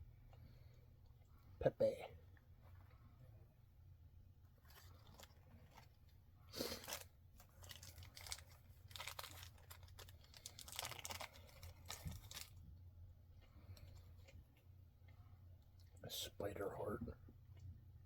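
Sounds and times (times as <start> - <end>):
packaging rustling and tearing: 4.6 - 6.0, 6.6 - 12.6.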